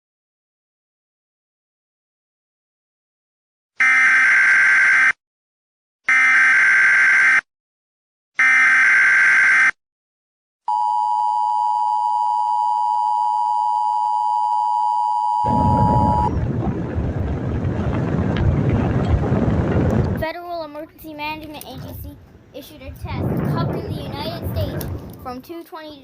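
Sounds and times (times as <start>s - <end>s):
steady two-tone alert signal: 10.7s - 16.3s
rush of background noise: 20.0s - 25.5s.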